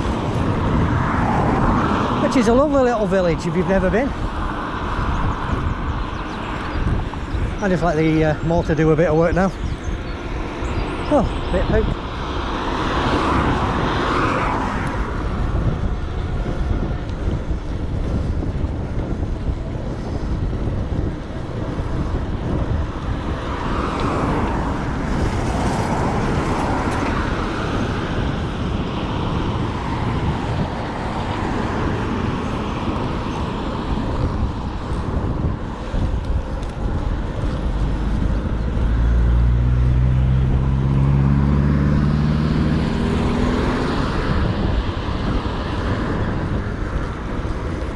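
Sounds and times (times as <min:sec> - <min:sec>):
road traffic rushing: 0:00.0 - 0:47.9
vehicles going by: 0:00.0 - 0:47.9
vehicle engine rising in pitch: 0:37.8 - 0:44.7.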